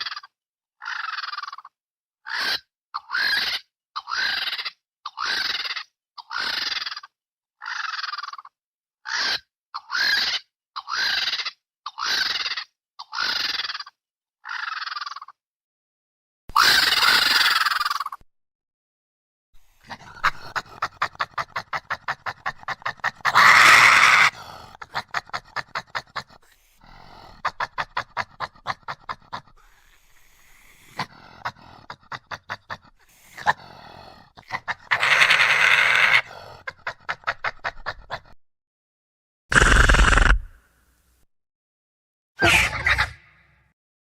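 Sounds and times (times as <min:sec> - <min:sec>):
creature harsh shrieks: 0:09.0 - 0:11.4, 0:16.5 - 0:17.9, 0:19.7 - 0:25.6, 0:26.3 - 0:32.0, 0:32.6 - 0:36.7, 0:39.5 - 0:40.5, 0:42.4 - 0:43.6
creature chattering pulses: 0:16.5 - 0:18.2, 0:19.7 - 0:38.4, 0:39.5 - 0:40.6, 0:42.4 - 0:43.4.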